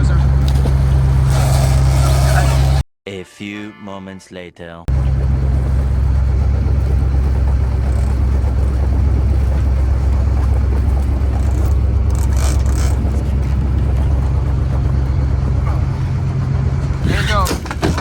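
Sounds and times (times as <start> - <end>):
boat engine rumbling: 0.0 - 2.8, 4.9 - 18.0
scratchy sounds: 0.6 - 2.8, 10.9 - 14.2.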